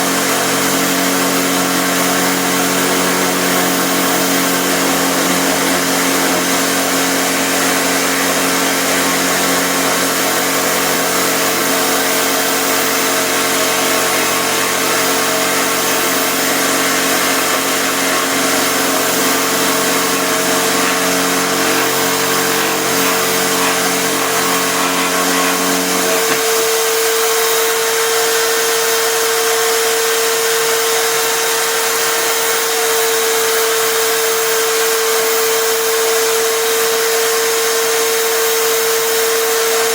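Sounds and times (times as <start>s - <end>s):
low motor hum: 0.0s - 28.4s
electric drill motor whining: 0.0s - 39.9s.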